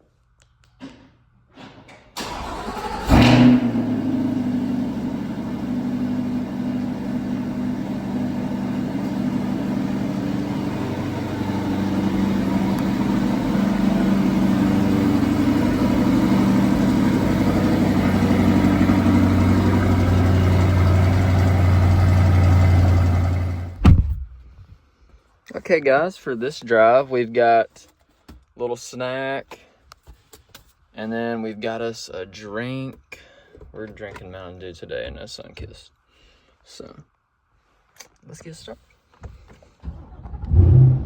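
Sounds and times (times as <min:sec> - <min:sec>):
engine starter turning: 0:02.2 - 0:04.3
car engine revving and idling: 0:02.4 - 0:23.8, 0:40.3 - 0:41.0.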